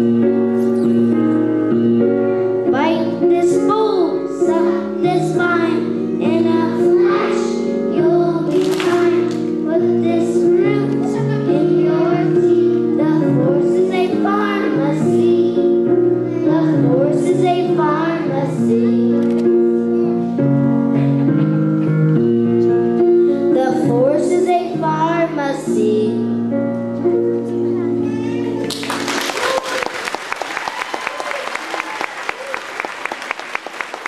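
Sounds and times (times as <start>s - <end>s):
musical accompaniment: 0.0s - 34.0s
young children singing: 2.7s - 20.2s, 23.5s - 26.2s.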